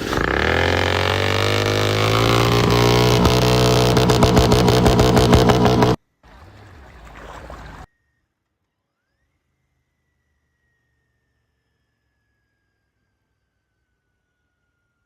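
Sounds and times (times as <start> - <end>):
exhaust crackle: 0.0 - 6.0
motorcycle engine running: 0.0 - 6.0.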